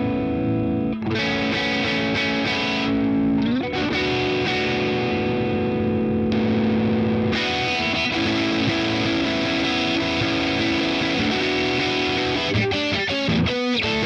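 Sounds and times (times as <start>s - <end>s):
overdriven electric guitar: 0.0s - 14.0s.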